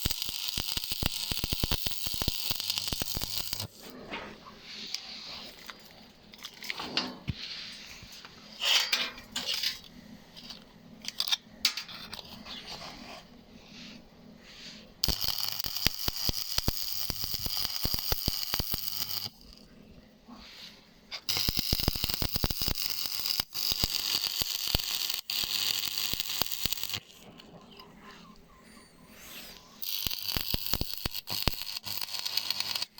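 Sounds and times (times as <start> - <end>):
welding arc crackling: 0.0 - 3.9, 15.0 - 19.6, 21.3 - 27.5, 29.4 - 32.9
metal scraping and clinking: 3.8 - 13.3.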